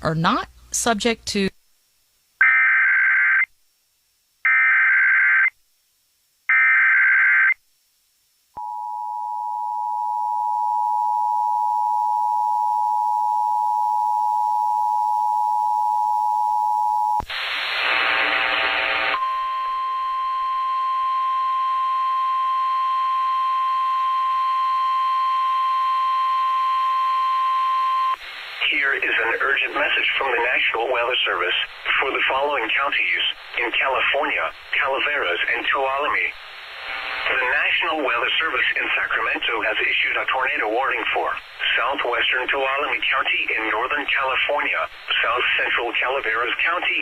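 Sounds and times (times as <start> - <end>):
long steady alarm tone: 8.6 - 17.2, 19.1 - 28.2
noisy burst: 17.2 - 19.9, 28.1 - 47.0.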